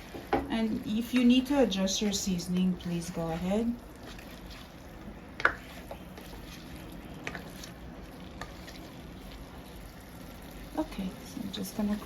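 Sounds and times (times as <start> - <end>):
food sizzling in a pot: 0.0 - 12.0.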